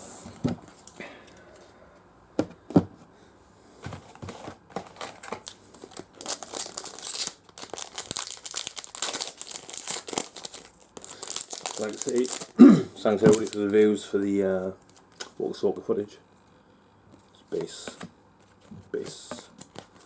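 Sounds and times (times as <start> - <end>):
card pack wrapper crinkling and tearing: 4.7 - 13.8, 19.5 - 20.0.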